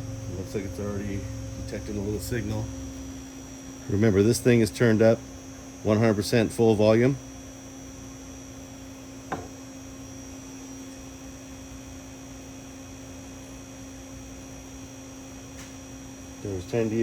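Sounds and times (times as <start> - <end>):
steady electrical hum: 0.0 - 17.0.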